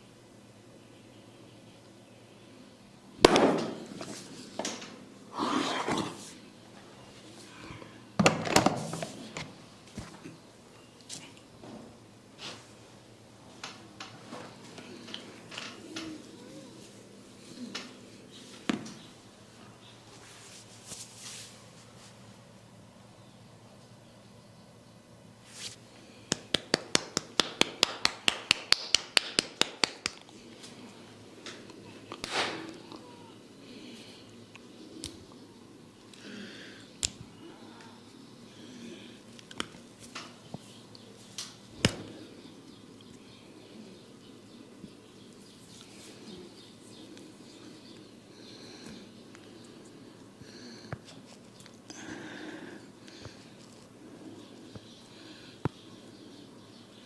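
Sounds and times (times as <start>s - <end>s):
rustling: 20.0s - 22.4s
rapid massage tapping: 26.3s - 30.3s.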